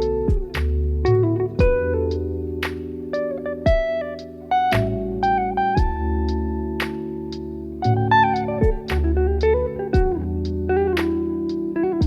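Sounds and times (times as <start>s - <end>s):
light percussive hits: 0.0s - 1.9s, 2.6s - 4.0s, 4.7s - 5.1s, 5.8s - 6.0s, 8.4s - 10.2s, 10.9s - 11.5s
steady bass: 0.0s - 3.1s, 3.7s - 11.7s
guitar notes: 0.0s - 12.0s.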